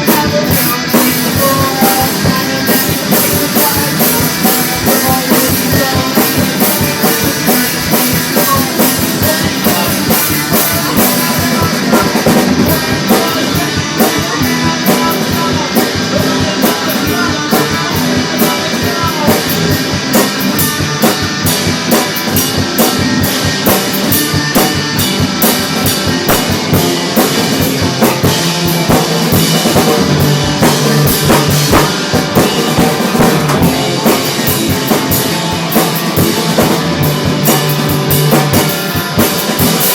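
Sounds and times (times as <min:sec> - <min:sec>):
rock music with drums and guitar: 0:00.0 - 0:39.9.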